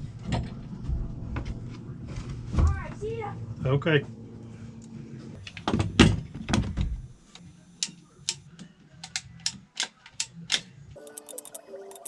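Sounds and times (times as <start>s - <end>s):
quick run of small ticks: 11.0s - 12.0s
tools and parts clicking and tapping: 11.0s - 12.0s.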